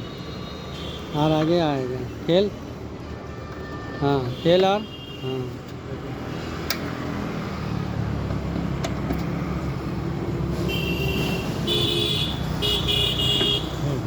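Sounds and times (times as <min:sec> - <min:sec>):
horn honking: 0:10.6 - 0:13.9.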